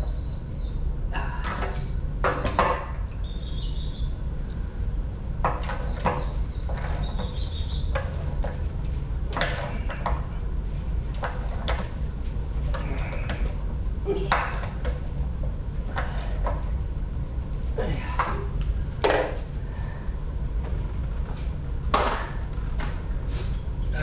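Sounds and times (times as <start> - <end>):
steady low hum: 0.0 - 24.0
metal tools clinking: 9.3 - 10.3.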